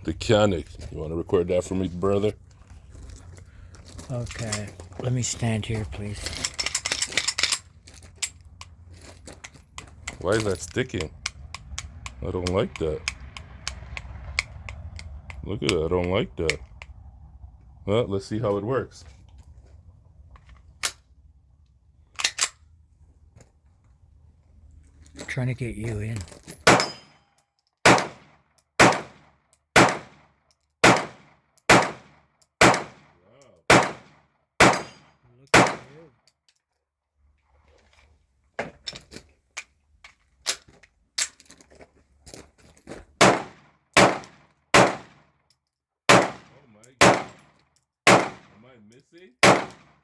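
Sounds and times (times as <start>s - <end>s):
metallic pistol clicks: 9.8s - 17.0s, 22.2s - 22.6s
quieter sharp cracks: 11.0s - 17.0s, 27.8s - 33.1s, 33.7s - 36.0s, 43.2s - 45.3s, 46.1s - 48.6s, 49.4s - 50.0s
pistol shots: 26.6s - 27.1s, 27.8s - 29.2s, 29.8s - 30.2s, 30.8s - 33.1s, 33.7s - 36.0s, 43.2s - 45.2s, 46.1s - 47.4s, 48.1s - 48.5s, 49.4s - 50.0s.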